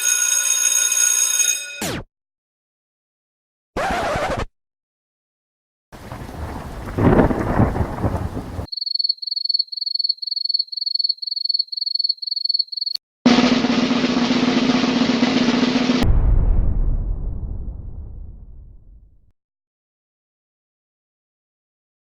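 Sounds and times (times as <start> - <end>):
rain: 6.0 - 8.7
thunder: 6.0 - 8.7, 15.3 - 19.2
snare drum roll: 13.3 - 16.1.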